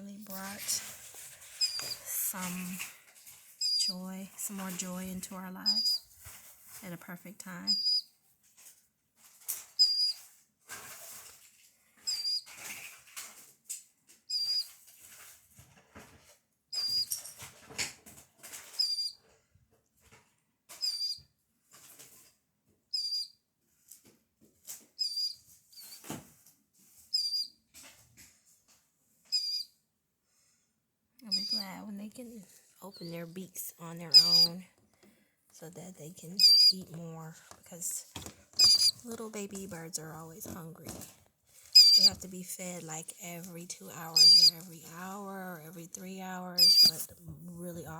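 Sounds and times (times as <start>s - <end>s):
soft rustling and clicks: 31.2s - 46.0s
chicks peeping: 33.9s - 34.6s, 36.4s - 37.0s, 38.1s - 39.7s, 41.8s - 42.3s, 44.1s - 44.6s, 46.6s - 47.1s.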